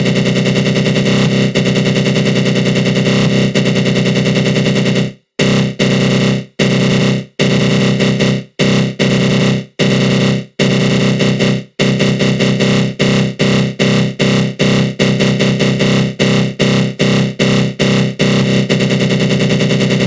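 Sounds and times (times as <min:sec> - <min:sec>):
harsh buzzing synth growl: 0:00.1 - 0:03.6.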